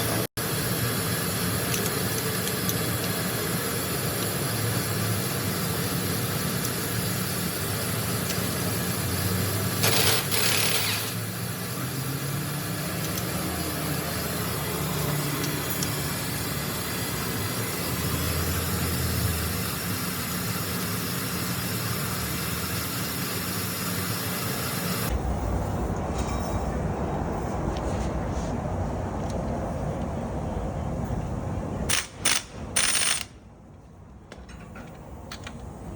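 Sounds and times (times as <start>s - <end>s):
road noise: 4.0s - 35.9s
vehicle engine running: 7.2s - 23.3s.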